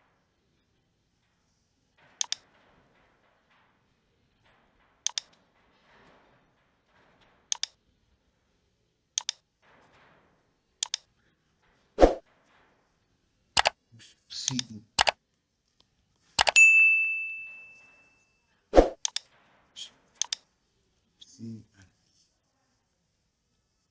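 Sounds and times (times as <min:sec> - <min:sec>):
thump: 0:02.0 - 0:07.8
computer mouse clicking: 0:09.2 - 0:09.4, 0:10.8 - 0:11.0, 0:14.5 - 0:15.2, 0:18.8 - 0:19.2.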